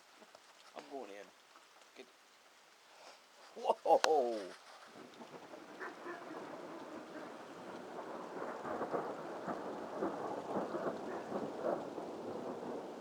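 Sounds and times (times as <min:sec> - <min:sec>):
rolling thunder: 0:04.9 - 0:13.0.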